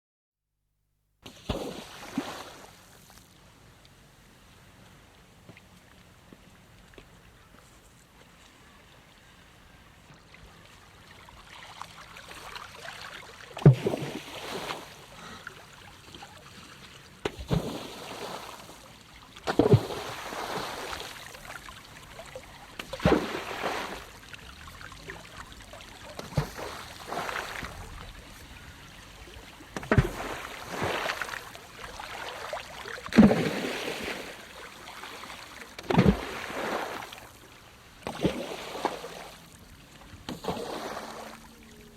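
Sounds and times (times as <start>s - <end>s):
swimmer splashing in water: 10.5s - 37.4s, 38.0s - 41.9s.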